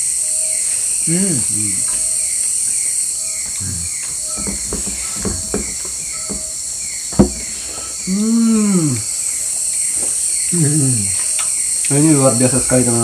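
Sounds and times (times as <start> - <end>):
night insects chorus: 0.0 - 13.0
brief murmur: 1.1 - 1.9.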